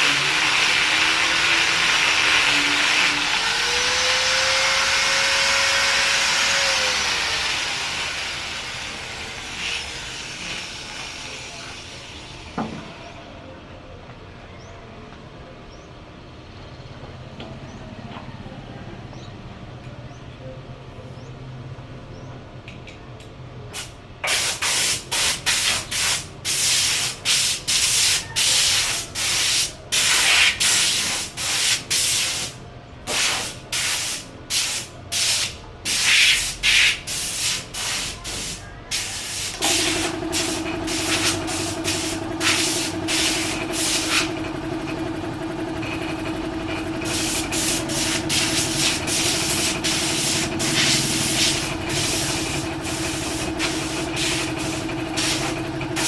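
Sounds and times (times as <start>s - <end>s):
small motor humming: 0.0s - 13.0s, 38.9s - 56.0s
sandpaper rubbing on a door: 24.3s - 44.3s, 47.0s - 56.0s.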